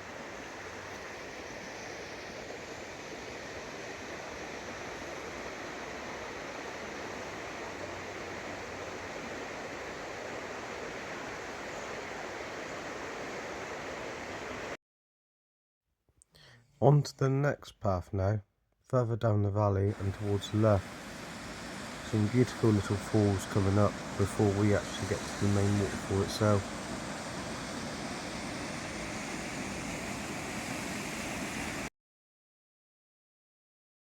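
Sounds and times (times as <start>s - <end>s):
waterfall rushing: 19.9s - 31.9s.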